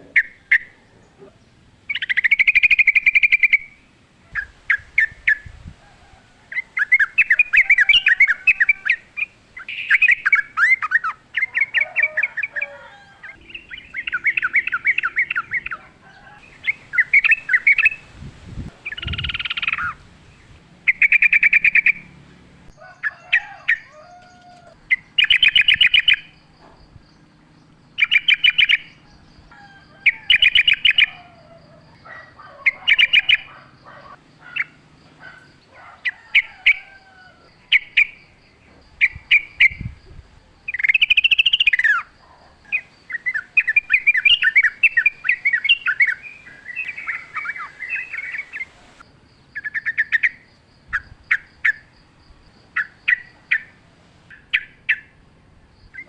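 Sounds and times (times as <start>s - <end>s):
bird chattering: 0.0s - 5.6s, 6.5s - 22.2s, 24.9s - 26.4s, 31.9s - 37.0s, 39.0s - 49.0s
bird singing bubbly phrases: 0.0s - 5.6s, 6.5s - 22.2s, 24.9s - 26.4s, 39.0s - 49.0s.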